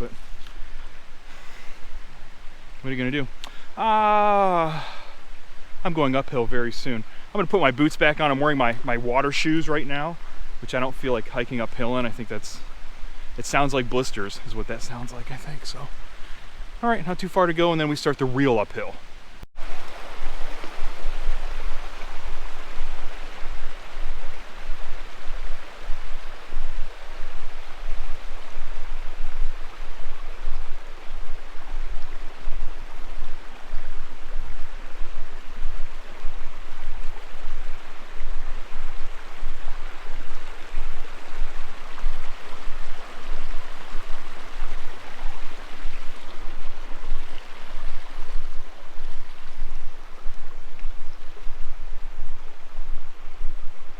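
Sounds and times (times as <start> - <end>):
water rushing over rocks: 3.5 - 15.9, 19.6 - 53.9.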